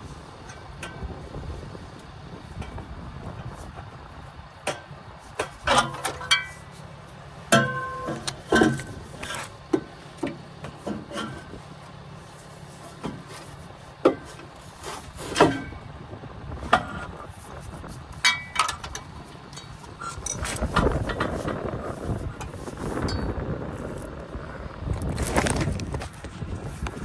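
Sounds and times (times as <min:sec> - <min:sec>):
metal clanks and knocks: 0:04.6 - 0:06.7, 0:07.5 - 0:11.6, 0:12.9 - 0:14.6, 0:15.3 - 0:15.9, 0:16.6 - 0:17.2, 0:18.2 - 0:21.7.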